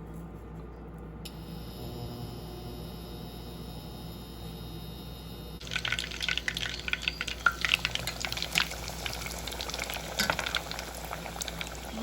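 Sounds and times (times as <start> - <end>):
food frying in hot oil: 5.6 - 12.0.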